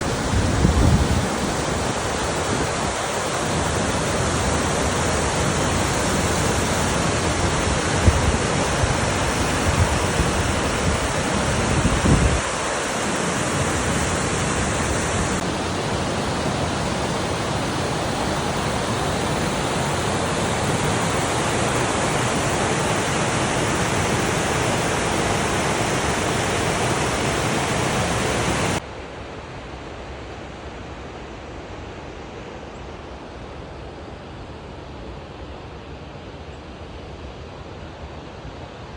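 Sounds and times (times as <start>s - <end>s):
wind buffeting microphone: 0.0s - 3.0s, 7.3s - 12.8s
waterfall rushing: 0.0s - 28.8s.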